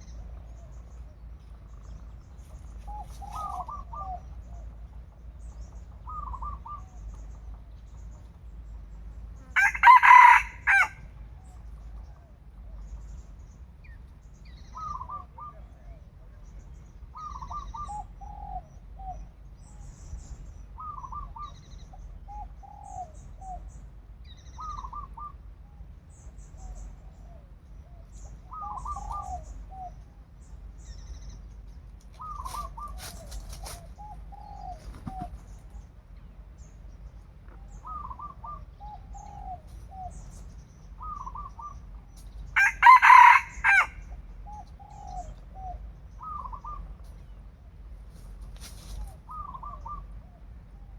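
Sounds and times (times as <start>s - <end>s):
rooster crowing: 9.6s - 11.1s, 42.6s - 44.1s
brief rustle: 48.1s - 49.2s.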